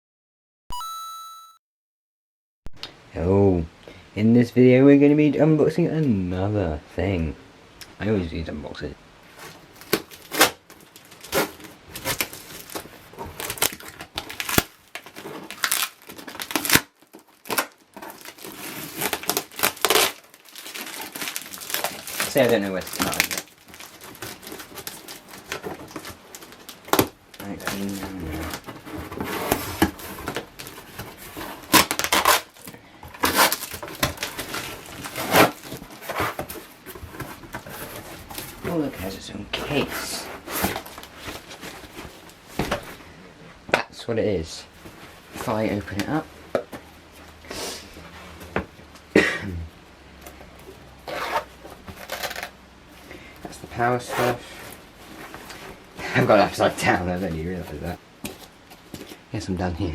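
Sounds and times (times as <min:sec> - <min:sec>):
packaging crinkling and tearing: 0:09.3 - 0:39.8, 0:51.0 - 0:52.6.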